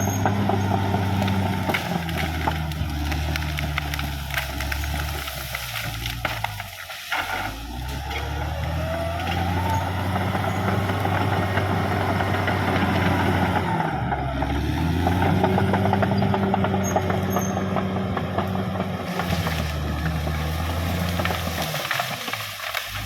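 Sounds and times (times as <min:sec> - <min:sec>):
bulldozer diesel engine running: 0:00.0 - 0:23.0.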